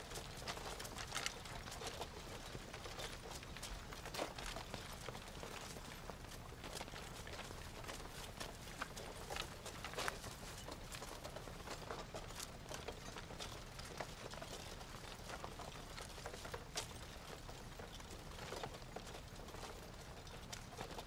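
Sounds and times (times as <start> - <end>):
footsteps on rough ground: 0.0 - 21.0.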